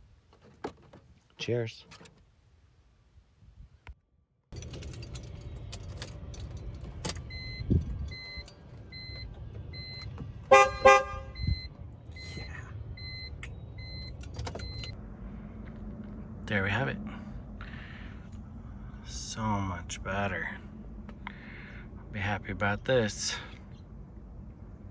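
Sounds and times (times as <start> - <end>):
dashboard warning chime: 6.0 - 15.0
car horn blasts: 10.4 - 11.6
low rumble: 11.2 - 22.9.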